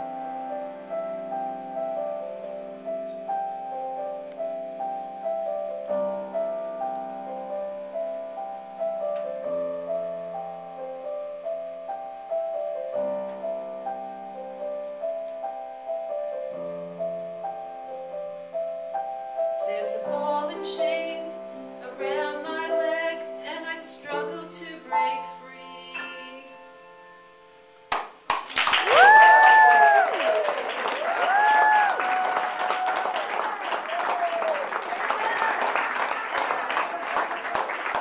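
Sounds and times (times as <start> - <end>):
solo piano broken chords: 0.0 - 27.9.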